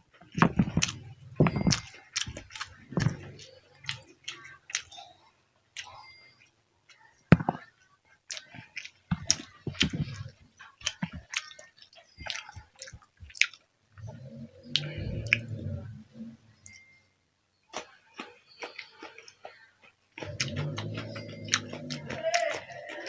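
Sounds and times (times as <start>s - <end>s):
chewing crunchy food: 0.1s - 7.7s, 8.3s - 16.9s, 17.7s - 23.0s
wet mouth clicks: 8.3s - 15.8s
low rumbling: 14.0s - 16.8s.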